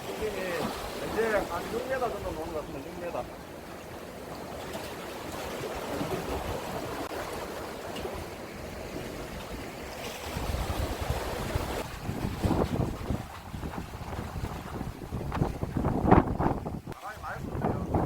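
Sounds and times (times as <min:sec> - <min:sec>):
sea waves against shore: 0:00.0 - 0:18.0
wind buffeting microphone: 0:08.9 - 0:18.0.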